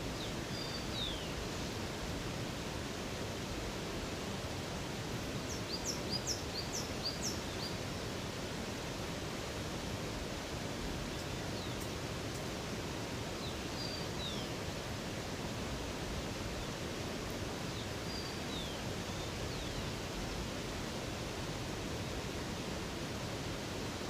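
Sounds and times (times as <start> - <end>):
flowing river water: 0.0 - 24.0
small bird singing: 0.2 - 1.4, 5.5 - 8.0, 11.1 - 12.0, 13.4 - 14.5, 17.7 - 19.9.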